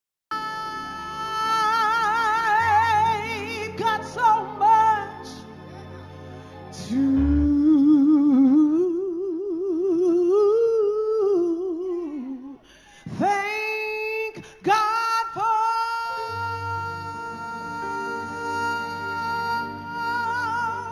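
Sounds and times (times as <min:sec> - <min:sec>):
woman singing with vibrato: 0:00.3 - 0:05.5, 0:06.7 - 0:20.9
keyboard chords: 0:00.3 - 0:10.0
low bass notes: 0:07.1 - 0:08.4.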